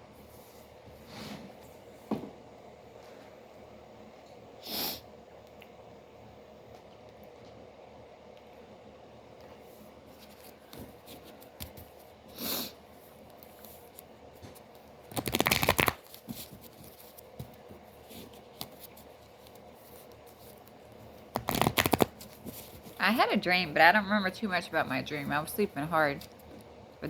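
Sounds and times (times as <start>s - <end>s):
cards being shuffled: 13.4s - 23.0s
card handling ticks: 21.4s - 22.3s.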